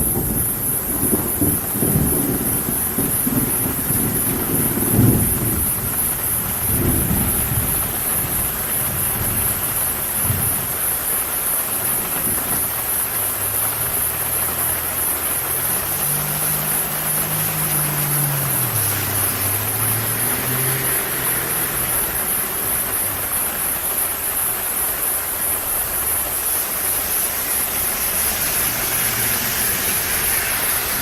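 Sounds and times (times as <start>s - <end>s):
rolling thunder rumbles: 0.0s - 14.8s
steady rain falling: 0.0s - 31.0s.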